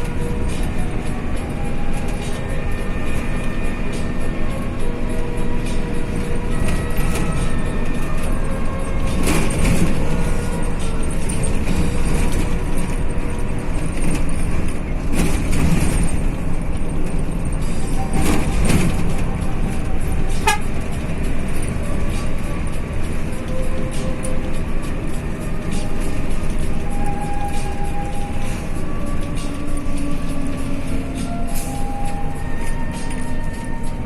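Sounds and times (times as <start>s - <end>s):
bus engine and road noise: 0.0s - 34.0s
bus horn tooting: 17.9s - 34.0s.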